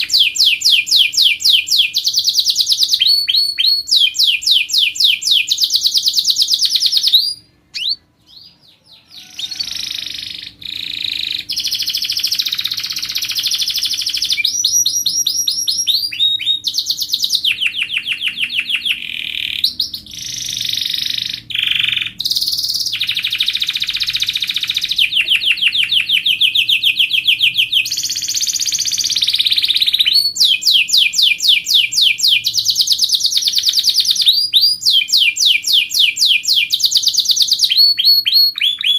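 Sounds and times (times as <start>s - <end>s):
canary singing trills: 0.0s - 38.9s.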